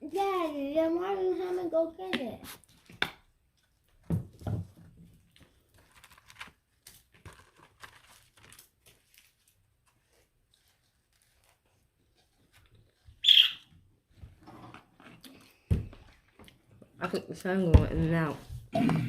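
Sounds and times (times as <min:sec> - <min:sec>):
food packaging crinkling: 0:05.2 - 0:13.2.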